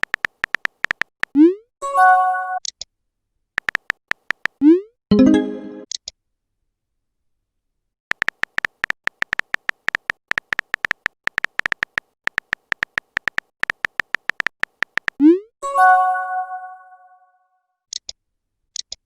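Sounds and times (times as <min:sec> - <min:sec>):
phone keyboard typing clicks: 0:00.0 - 0:01.4, 0:03.6 - 0:04.6, 0:08.1 - 0:15.2.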